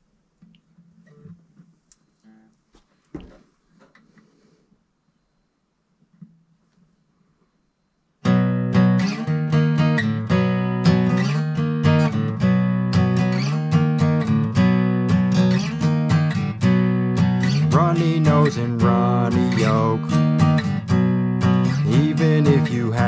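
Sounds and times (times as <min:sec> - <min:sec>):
acoustic guitar strumming: 0:08.2 - 0:23.0.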